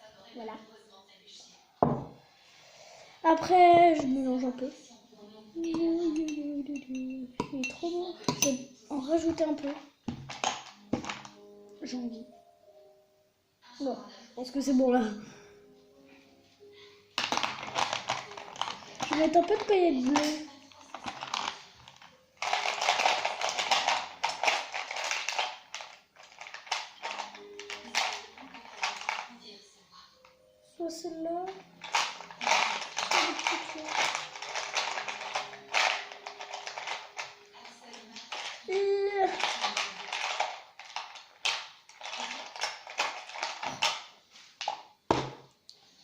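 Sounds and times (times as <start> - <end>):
plastic glitter container rattling: 5.6 - 7.7, 8.3 - 11.3, 17.2 - 29.4, 31.5 - 44.1
plastic pots clicking and clattering: 9.3 - 11.4, 17.2 - 29.3, 31.8 - 45.4.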